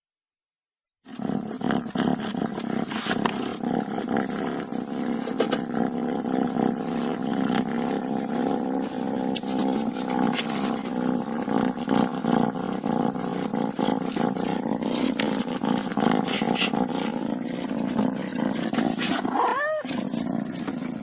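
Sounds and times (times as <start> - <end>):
cat cub low rumbling: 1.0 - 21.0
cat cub short cry: 19.3 - 19.9.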